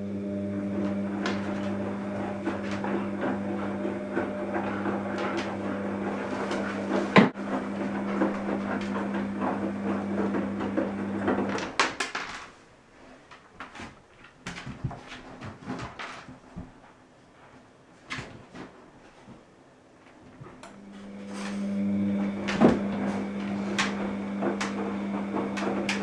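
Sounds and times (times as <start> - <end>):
washing machine churning: 0.0 - 12.4, 20.4 - 26.0
washing machine clicks: 21.0 - 26.0.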